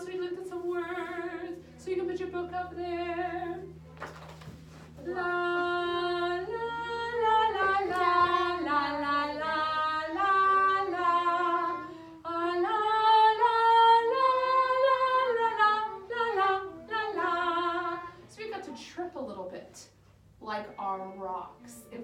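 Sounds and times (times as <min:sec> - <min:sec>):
woman singing unaccompanied: 0:00.0 - 0:03.8, 0:05.0 - 0:18.5.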